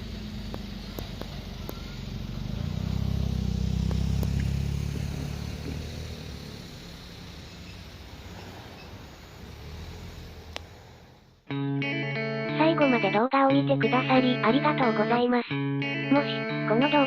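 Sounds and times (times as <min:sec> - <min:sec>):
vehicle passing with low rumble: 0:00.0 - 0:11.5.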